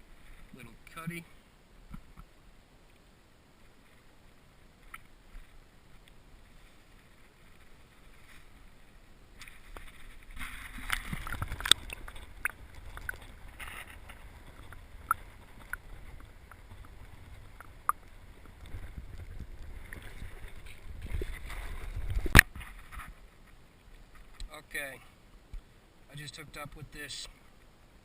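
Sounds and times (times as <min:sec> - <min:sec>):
wind rumbling on microphone: 0:05.4 - 0:24.5.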